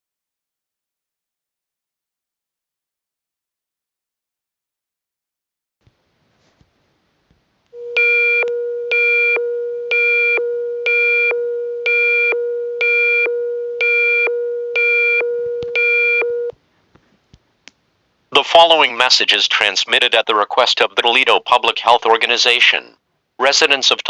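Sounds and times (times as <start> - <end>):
buzzy pulsing beep: 7.8 - 16.5
low hum-like alert tone: 7.8 - 16.5.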